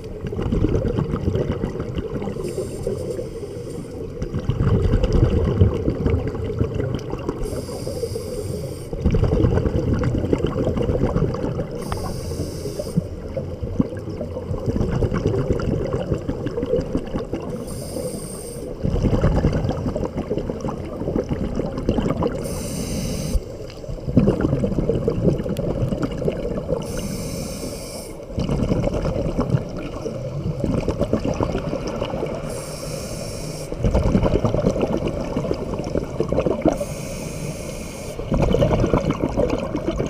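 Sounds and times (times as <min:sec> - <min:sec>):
exhaled bubbles burbling: 0:00.0 - 0:03.0, 0:04.0 - 0:07.8, 0:08.9 - 0:12.1, 0:13.0 - 0:17.7, 0:18.7 - 0:22.6, 0:23.8 - 0:27.1, 0:28.2 - 0:32.6, 0:33.7 - 0:36.9, 0:38.2 - 0:40.0
regulator hissing inhale: 0:02.4 - 0:04.1, 0:07.4 - 0:09.0, 0:11.8 - 0:13.2, 0:17.6 - 0:18.8, 0:22.4 - 0:23.9, 0:26.8 - 0:28.3, 0:32.4 - 0:33.8, 0:36.7 - 0:38.3.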